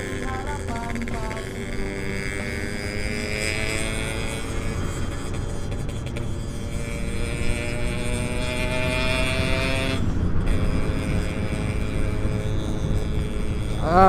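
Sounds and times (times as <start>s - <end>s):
motorcycle engine accelerating: 0.0s - 14.0s.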